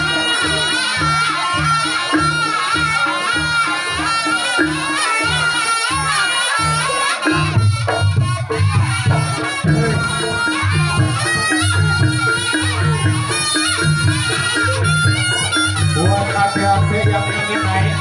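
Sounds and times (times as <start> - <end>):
wavering reed trumpet melody: 0.0 - 18.0
low drum beat: 7.2 - 18.0.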